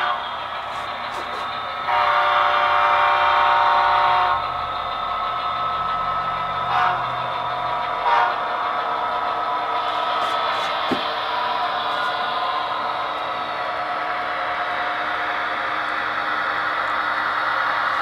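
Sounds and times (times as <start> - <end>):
model locomotive engine sound: 0.0 - 18.0
model diesel horn chord: 1.9 - 4.4, 6.7 - 7.0, 8.0 - 8.4.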